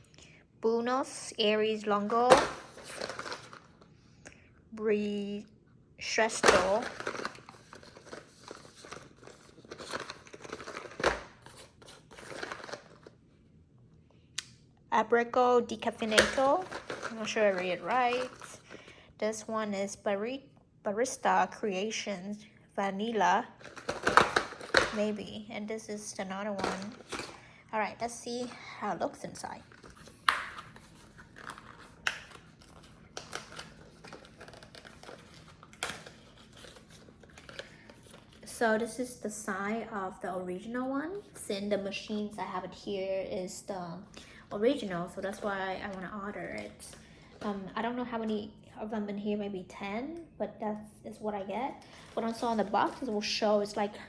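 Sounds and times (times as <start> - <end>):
packaging taps and rustles: 2.1 - 3.8, 6.3 - 13.2, 16.0 - 19.0, 23.6 - 25.1, 26.6 - 27.4, 29.4 - 38.6, 51.7 - 53.2.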